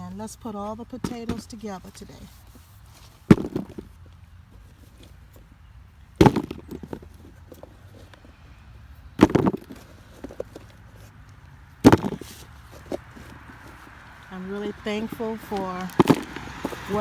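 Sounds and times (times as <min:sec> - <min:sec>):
potatoes knocking and rattling: 0:03.1 - 0:04.0, 0:06.2 - 0:08.4, 0:09.1 - 0:17.0.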